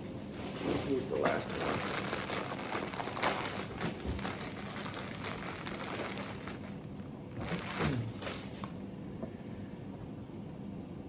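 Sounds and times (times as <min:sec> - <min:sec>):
packaging rustling and crinkling: 0:00.3 - 0:08.8.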